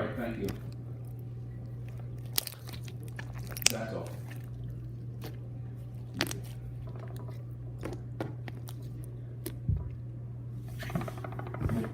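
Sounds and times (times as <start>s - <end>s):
slime crackling and popping: 2.0s - 4.5s.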